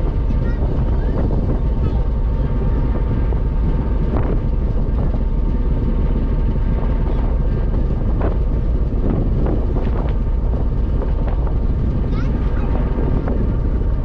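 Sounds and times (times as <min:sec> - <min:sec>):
ferry engine rumbling: 0:00.0 - 0:14.0
wind buffeting microphone: 0:00.0 - 0:14.0.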